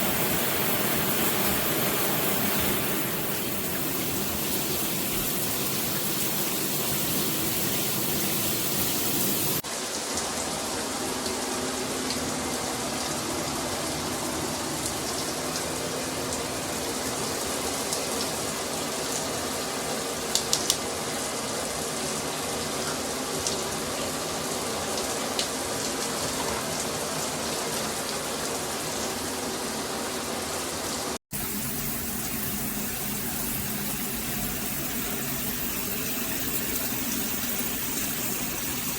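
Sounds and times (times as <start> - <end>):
shower head spraying water: 0.0 - 9.6, 31.3 - 38.9.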